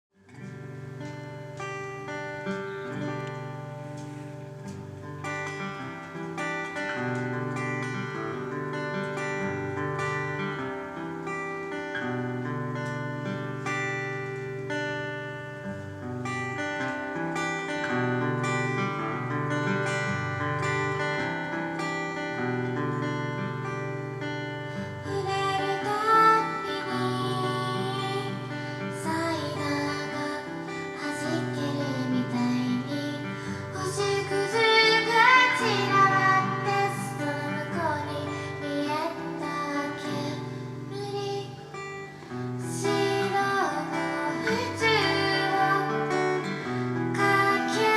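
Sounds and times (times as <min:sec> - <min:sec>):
acoustic guitar strummed chords: 0:00.2 - 0:47.9
woman singing: 0:24.8 - 0:47.9.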